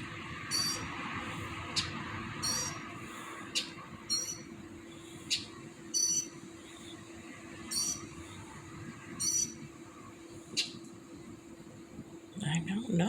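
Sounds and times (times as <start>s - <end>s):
high squawky bird calls: 0.5s - 0.9s, 1.7s - 2.9s, 3.5s - 4.5s, 5.2s - 6.9s, 7.7s - 8.2s, 9.2s - 9.6s, 10.5s - 10.8s
sharp bird chirps: 0.5s - 0.9s, 1.7s - 2.8s, 3.6s - 4.5s, 5.3s - 6.4s, 7.7s - 8.1s, 9.2s - 9.6s.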